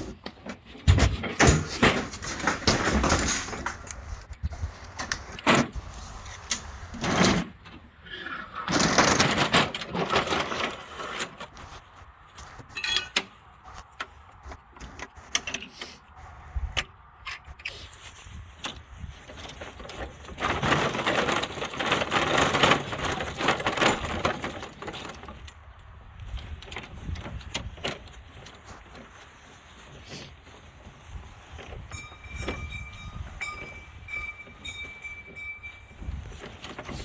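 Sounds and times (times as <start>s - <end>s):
objects knocking and clattering: 0.0s - 4.1s, 19.4s - 25.4s
rattling and scraping: 0.0s - 8.0s, 8.6s - 37.0s.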